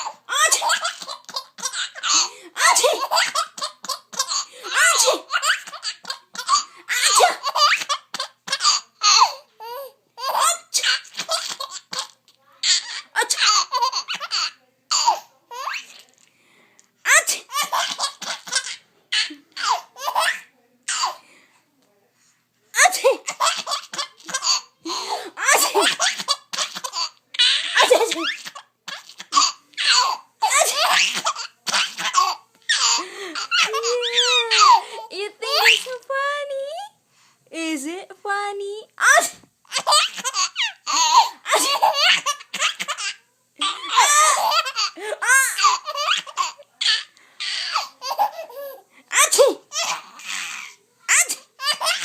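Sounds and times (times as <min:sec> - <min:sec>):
baby laughing: 0:00.0 - 0:16.0, 0:17.1 - 0:21.2, 0:22.8 - 0:36.0, 0:39.1 - 0:52.0
baby breathing: 0:24.9 - 0:25.4, 0:32.8 - 0:35.1.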